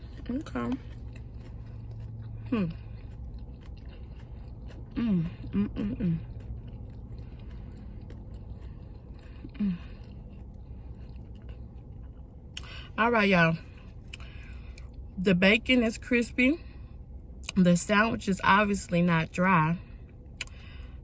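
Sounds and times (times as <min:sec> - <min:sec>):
person chewing food: 0:00.0 - 0:12.9, 0:13.6 - 0:15.2, 0:20.0 - 0:21.0.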